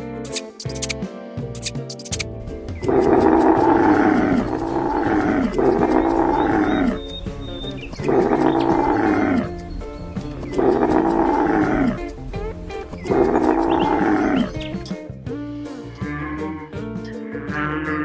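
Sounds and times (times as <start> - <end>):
background music: 0.0 - 18.0
animal's drawn-out call: 2.1 - 14.8.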